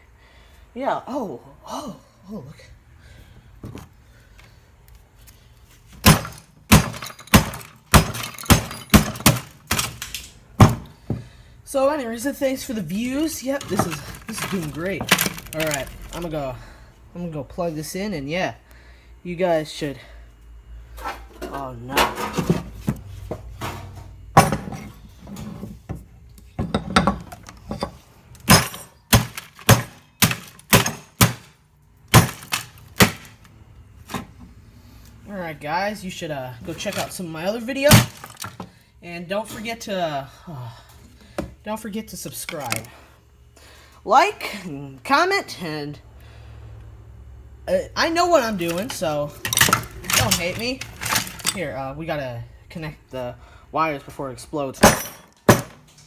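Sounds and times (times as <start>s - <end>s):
clattering: 6.0s - 10.9s, 13.2s - 16.2s, 32.1s - 33.4s, 48.6s - 51.6s
sharp knocks on hard objects: 6.0s - 11.2s, 28.4s - 33.4s.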